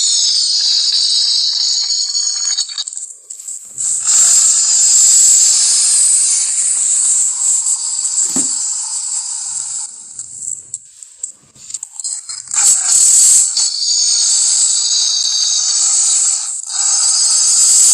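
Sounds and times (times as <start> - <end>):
high-pitched hissing rasp: 0.0 - 17.9
low thump: 8.2 - 8.6.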